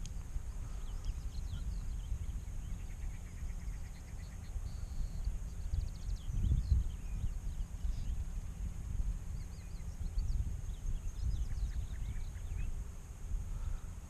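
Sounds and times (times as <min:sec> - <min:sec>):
birds chirping and trilling: 0:00.0 - 0:08.4, 0:09.3 - 0:12.9.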